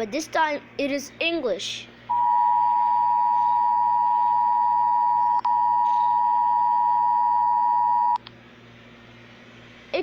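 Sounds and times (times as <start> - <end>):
loud electronic alert tone: 2.1 - 8.2
click: 8.2 - 8.4.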